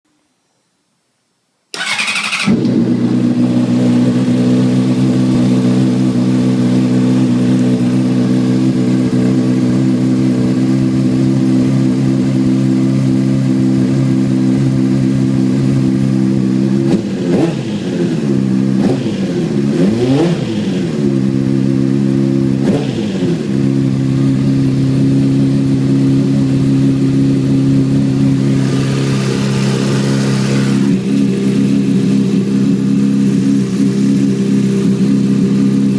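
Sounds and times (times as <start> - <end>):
motorcycle engine idling and revving: 1.8 - 35.9.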